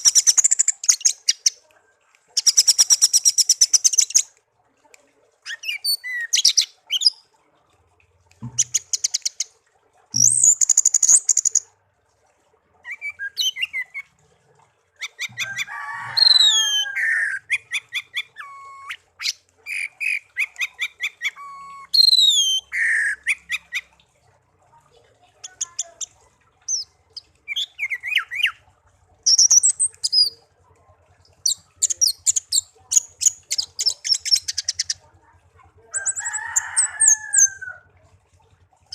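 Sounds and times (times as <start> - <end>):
songbird singing: 2.4 - 4.3, 10.2 - 11.6, 15.0 - 24.1, 25.4 - 28.6, 29.2 - 30.4, 31.2 - 35.0.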